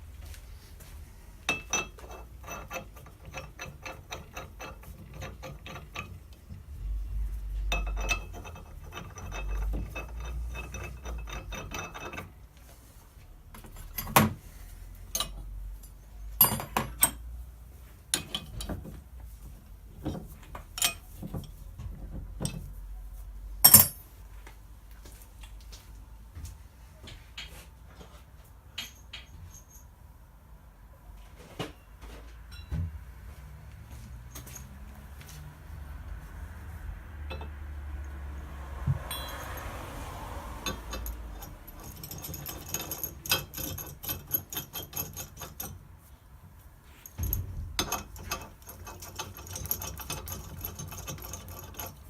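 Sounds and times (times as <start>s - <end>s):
metal tools knocking and clinking: 1.5s - 6.3s, 7.6s - 12.3s, 13.6s - 14.4s, 15.1s - 17.2s, 18.1s - 19.0s, 20.0s - 21.6s, 22.4s - 22.7s, 23.6s - 24.1s, 28.8s - 29.9s, 32.5s - 32.8s, 37.2s - 37.6s, 38.9s - 45.8s, 47.0s - 52.0s.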